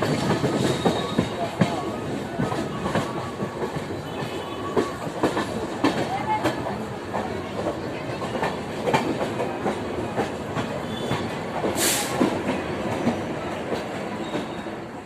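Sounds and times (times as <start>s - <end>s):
train wheels clicking over rail joints: 0.0s - 14.9s
short hiss: 11.8s - 12.2s.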